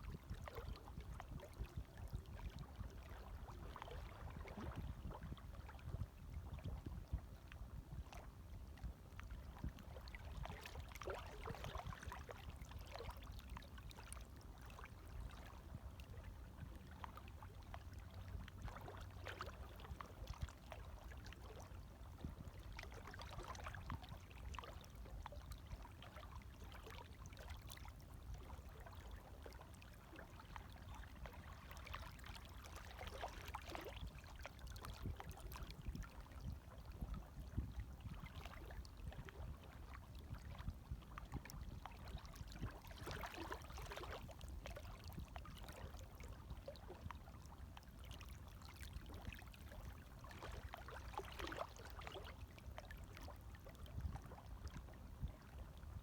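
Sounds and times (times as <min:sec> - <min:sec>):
gentle waves lapping: 0:00.0 - 0:56.0
soft water splashes: 0:00.0 - 0:56.0.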